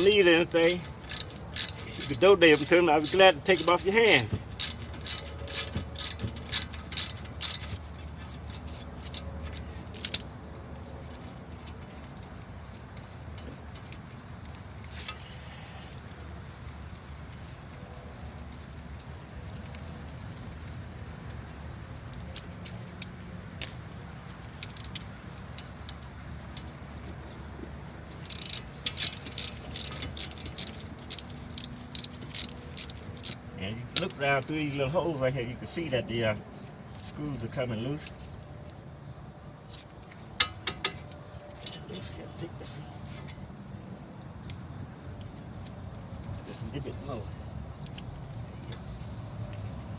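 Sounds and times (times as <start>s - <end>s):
ratchet wrench clicking: 0.0s - 10.3s, 28.2s - 34.2s.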